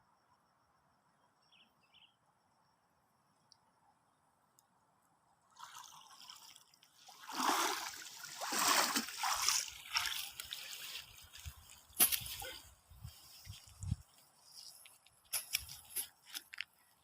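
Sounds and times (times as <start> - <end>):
water splashing and trickling: 5.5 - 14.1.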